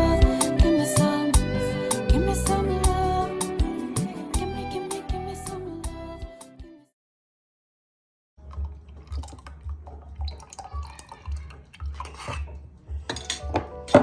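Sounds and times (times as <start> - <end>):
dishes and utensils clinking: 10.4 - 14.0.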